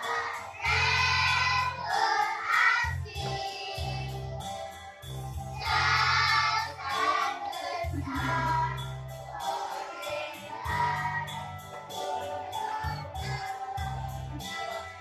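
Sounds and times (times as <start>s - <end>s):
backing music with strong bass: 0.0s - 9.4s, 10.5s - 12.2s
children's choir singing: 0.0s - 15.0s
jingling percussion: 0.0s - 15.0s.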